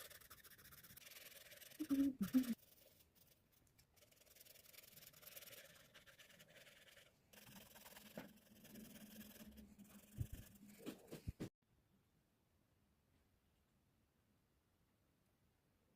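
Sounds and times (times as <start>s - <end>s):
pastel scratching on paper: 0.0s - 11.4s.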